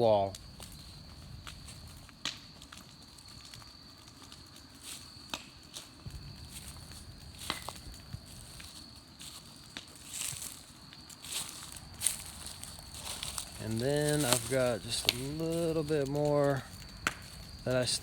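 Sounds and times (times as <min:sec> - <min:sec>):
footsteps crunching on dry leaves: 0:05.7 - 0:17.8
twigs snapping: 0:07.4 - 0:17.7.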